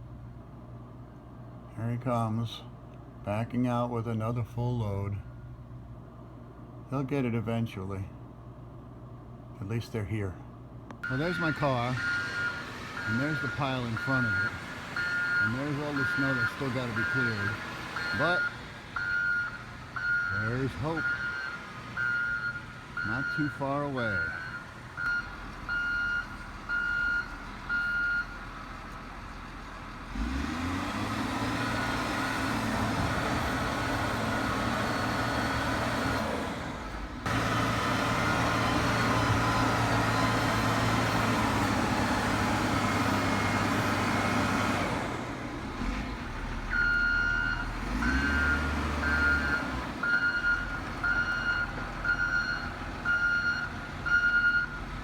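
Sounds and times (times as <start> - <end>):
snowplow engine under load: 0.0 - 55.0
reversing alarm beeping: 11.0 - 28.5, 37.3 - 42.2, 46.7 - 54.8.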